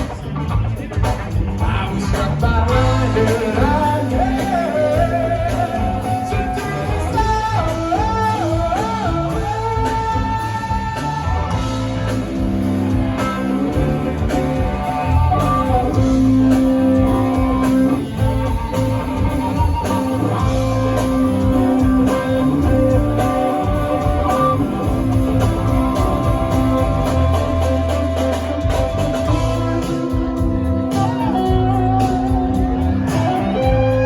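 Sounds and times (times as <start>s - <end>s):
bass and drums: 0.0s - 34.0s
electric guitar lead with vibrato: 0.0s - 34.0s.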